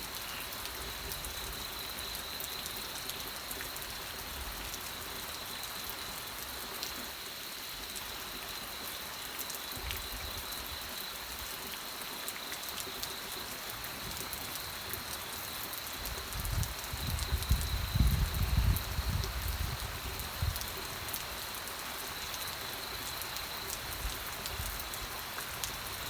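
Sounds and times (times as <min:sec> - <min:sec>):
steady rain: 0:00.0 - 0:26.0
raindrop ticks: 0:22.1 - 0:26.0.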